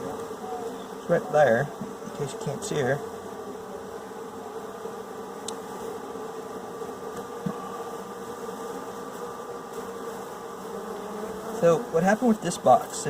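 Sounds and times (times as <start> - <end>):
bee swarm buzzing: 0.0 - 13.0
faint clicks: 5.4 - 5.6.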